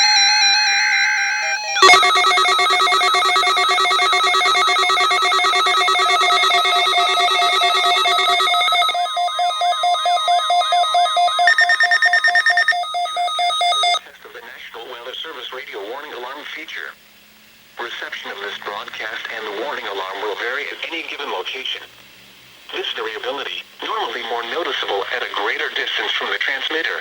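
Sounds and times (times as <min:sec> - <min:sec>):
electronic warbling and beeping tones: 0:01.8 - 0:14.0
weather radio warning alarms: 0:01.8 - 0:14.0.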